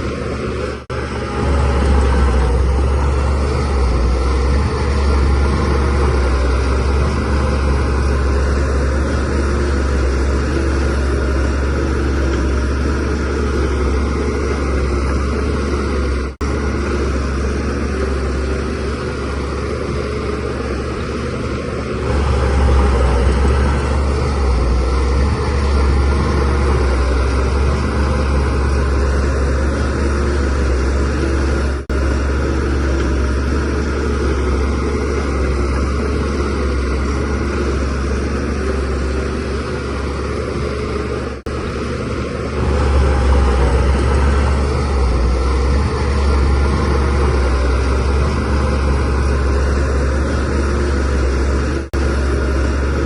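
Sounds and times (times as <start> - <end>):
bulldozer diesel engine droning: 0.0 - 53.0.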